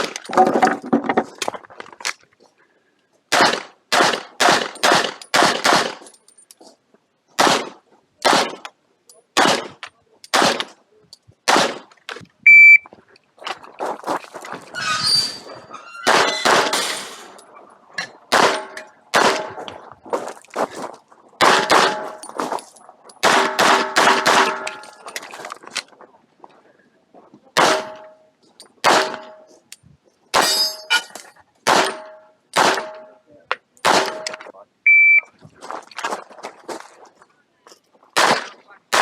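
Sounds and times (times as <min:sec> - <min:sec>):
pistol shots: 0:03.3 - 0:06.0, 0:07.4 - 0:08.6, 0:09.4 - 0:10.7, 0:11.5 - 0:11.9, 0:16.1 - 0:16.9, 0:18.3 - 0:19.6, 0:21.4 - 0:22.2, 0:23.2 - 0:24.8, 0:27.6 - 0:28.1, 0:28.8 - 0:29.4, 0:31.7 - 0:33.1, 0:33.8 - 0:34.4, 0:38.2 - 0:39.0
metallic clanging ring: 0:30.4 - 0:31.3.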